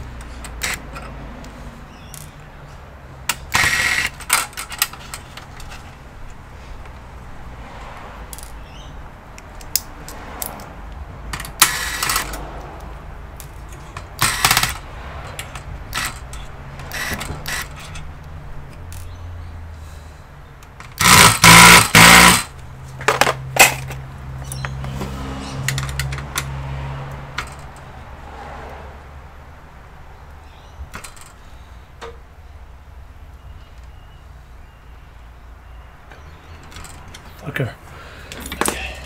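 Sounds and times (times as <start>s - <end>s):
computer parts clicking and scraping: 3.3s - 6.0s, 13.4s - 18.1s.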